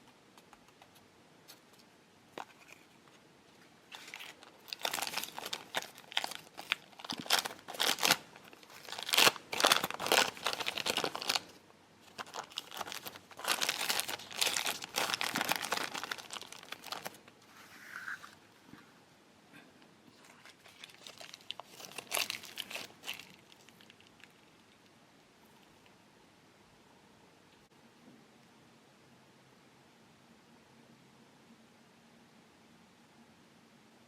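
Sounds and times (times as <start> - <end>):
plastic packet crinkling: 3.9 - 17.3, 20.2 - 24.8.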